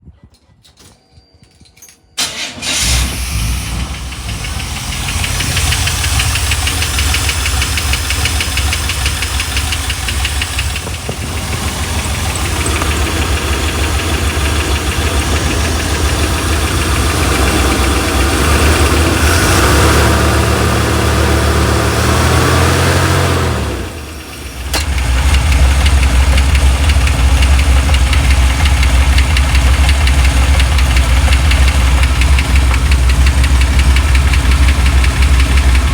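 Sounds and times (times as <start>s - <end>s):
pickup engine running: 2.2s - 35.9s
rapid even ticking: 4.2s - 19.6s, 24.8s - 35.9s.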